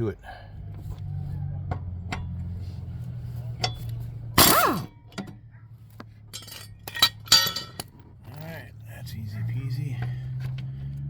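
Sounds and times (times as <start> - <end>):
impact wrench hammering: 4.4 - 5.3.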